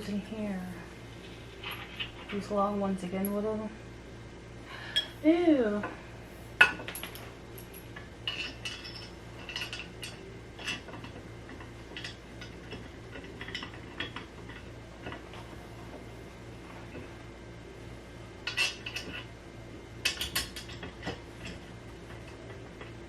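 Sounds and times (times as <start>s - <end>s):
screws and metal fittings clinking: 6.8s - 15.2s.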